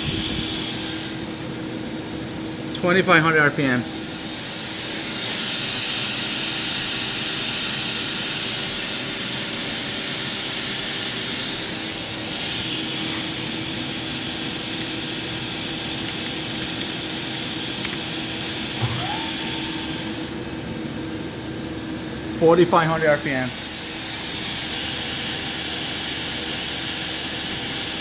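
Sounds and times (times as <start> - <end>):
machine spindle whining: 17.7 - 27.9.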